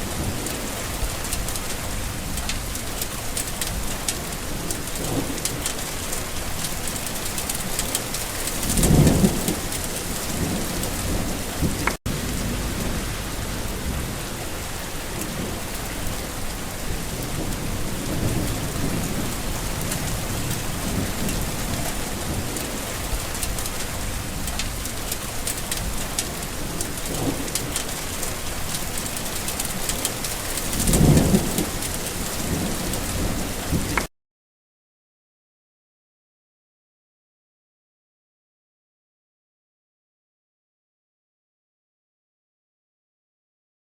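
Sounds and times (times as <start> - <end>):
heavy rain falling: 0.0 - 34.1
low rolls of thunder: 8.6 - 24.9, 30.6 - 34.0.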